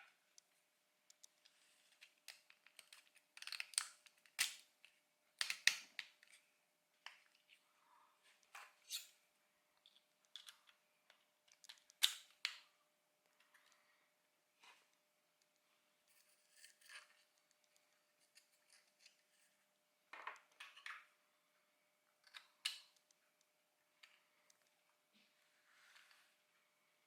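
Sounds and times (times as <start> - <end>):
plastic parts tapping and clicking: 1.1 - 6.4.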